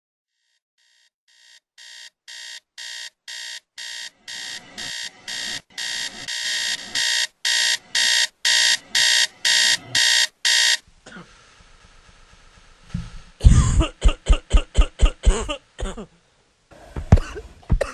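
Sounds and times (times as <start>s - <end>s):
shrill electronic alarm beeping: 1.3s - 10.8s.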